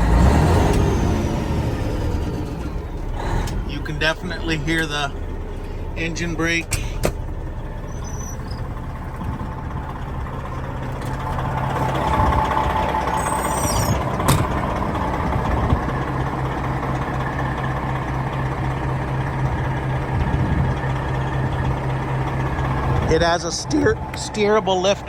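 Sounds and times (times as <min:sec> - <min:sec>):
truck engine droning: 0:00.0 - 0:25.0
high squeal: 0:07.8 - 0:09.0, 0:11.4 - 0:15.0.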